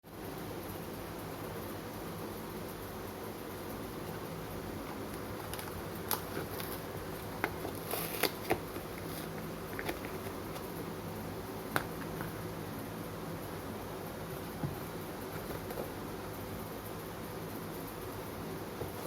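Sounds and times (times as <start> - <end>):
steady low hum: 0.0 - 19.0
packaging rustle: 5.4 - 10.7.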